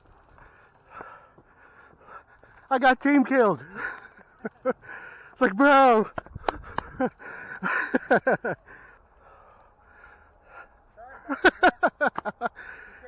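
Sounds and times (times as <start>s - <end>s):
man breathing hard: 0.4s - 2.7s, 3.6s - 5.4s, 6.3s - 11.0s, 12.5s - 13.0s.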